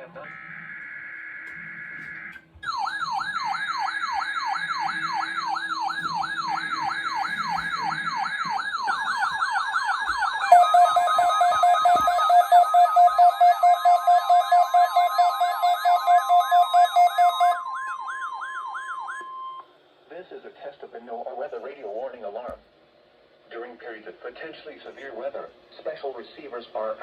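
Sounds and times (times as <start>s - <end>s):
electronic siren alarm sweeps: 0.0s - 19.7s
pulsing beep tone: 2.7s - 19.7s.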